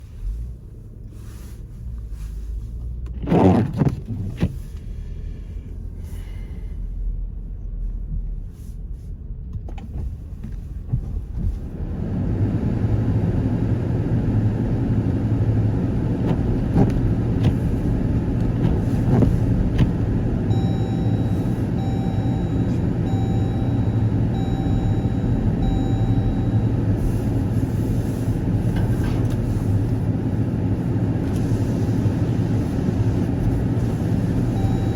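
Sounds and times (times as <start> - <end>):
car engine and tyre rumble: 0.0 - 34.9
electronic beeps: 20.5 - 26.8.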